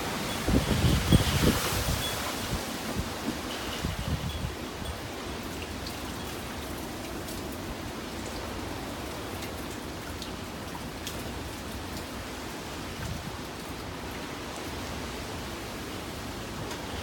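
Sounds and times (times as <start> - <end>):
heavy rain hissing: 0.0 - 4.2
raindrops striking close by: 0.0 - 17.0.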